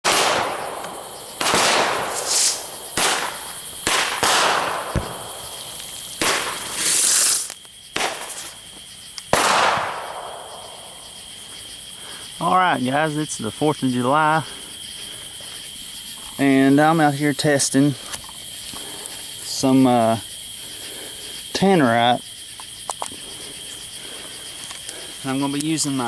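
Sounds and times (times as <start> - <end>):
sharp echoing bangs: 0.0 - 7.1, 7.9 - 8.6, 9.3 - 11.5
crickets chirping: 0.0 - 26.0.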